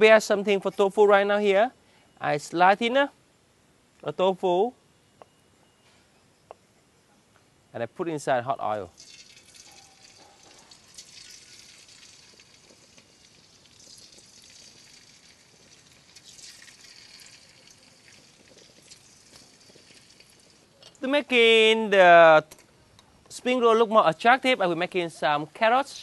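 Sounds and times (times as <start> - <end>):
tofu sizzling in hot oil: 9.0 - 20.7.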